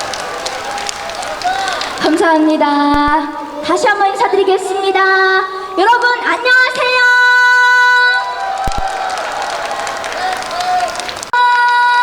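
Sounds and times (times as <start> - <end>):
audience cheering and clapping: 0.0 - 5.2, 5.9 - 12.0
low thumps: 2.8 - 3.4.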